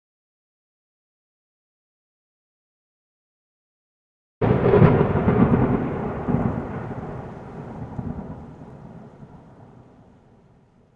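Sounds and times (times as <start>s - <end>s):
loud rumbling boom: 4.4s - 9.8s.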